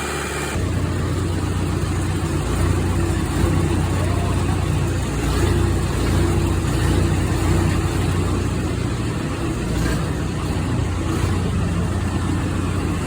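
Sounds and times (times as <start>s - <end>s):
combine harvester diesel engine: 0.0s - 13.0s.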